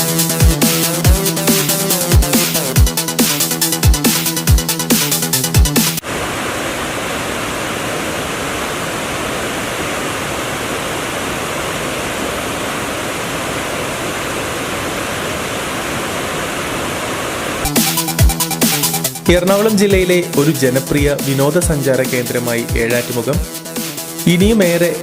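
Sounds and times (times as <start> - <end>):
river rushing over rocks: 6.0 - 17.7.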